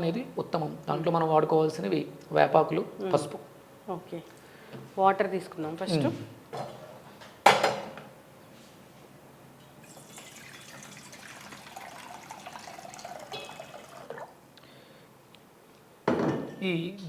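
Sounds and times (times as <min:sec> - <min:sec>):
water pouring into vessel: 0:09.8 - 0:14.4.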